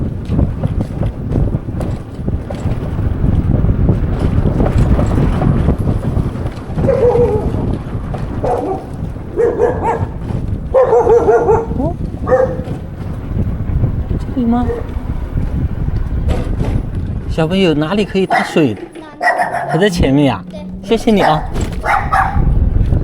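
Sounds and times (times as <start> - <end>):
wind buffeting microphone: 0.0 - 23.0
dog barking: 6.8 - 7.7, 8.4 - 12.8, 14.6 - 15.0, 18.2 - 20.0, 21.1 - 22.5.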